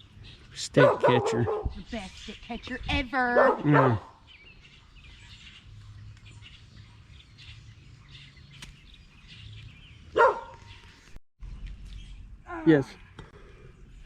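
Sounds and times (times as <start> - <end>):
faint birds chirping: 0.0 - 14.0
dog bark: 0.8 - 1.8, 3.3 - 4.2, 10.1 - 10.7.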